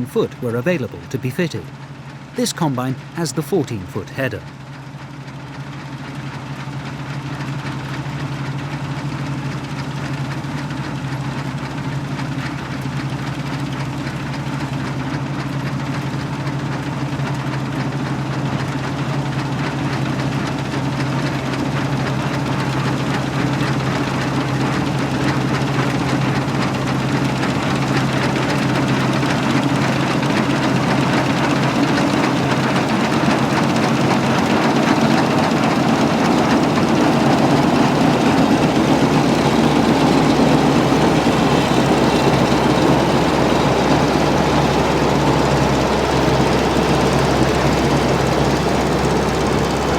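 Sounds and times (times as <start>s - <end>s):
diesel engine under load: 19.1s - 49.9s.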